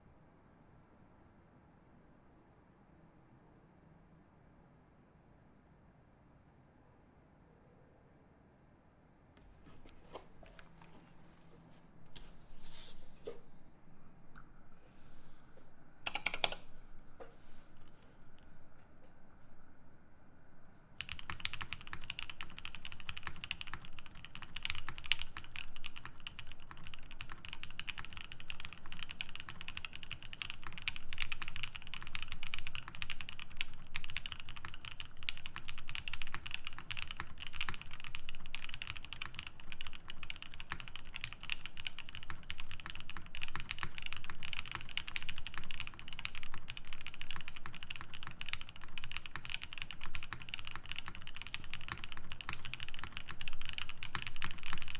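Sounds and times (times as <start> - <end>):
fast mechanical keyboard typing: 16.0 - 16.7, 21.0 - 54.9.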